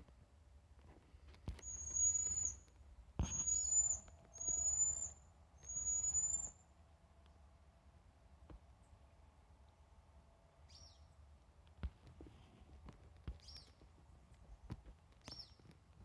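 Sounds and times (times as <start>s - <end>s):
bird whistling high notes: 1.6s - 2.6s, 3.2s - 6.6s.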